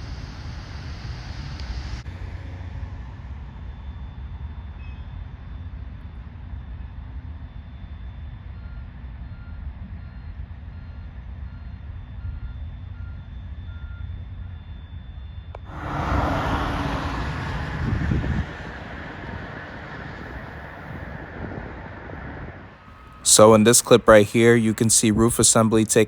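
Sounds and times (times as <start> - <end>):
wind: 0.0 - 13.1, 15.5 - 26.0
low rumble of site machinery: 0.0 - 26.0
reversing alarm beeps: 8.0 - 15.8.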